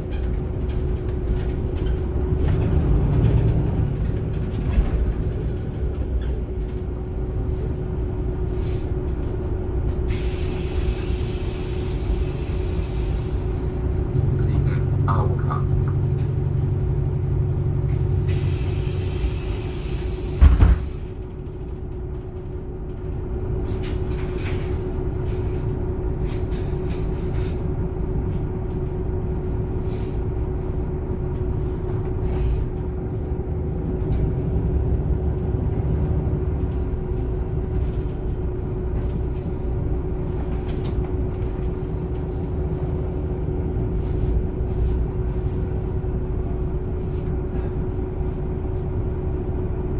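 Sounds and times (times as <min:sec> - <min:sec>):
bus engine running with whine: 0:00.0 - 0:49.9
loud thump: 0:20.4 - 0:20.9.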